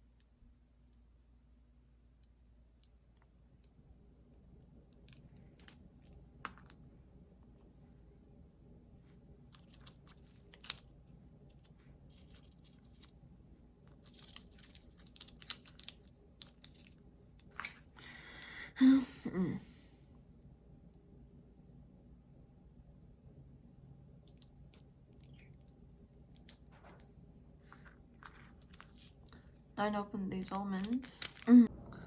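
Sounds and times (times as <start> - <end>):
soft rustle: 8.9 - 17.9.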